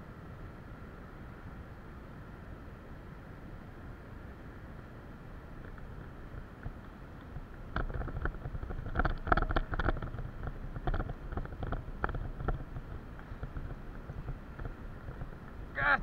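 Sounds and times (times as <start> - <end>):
wind rumbling on microphone: 0.0 - 16.0
sharp knocks and clicks: 6.6 - 15.6.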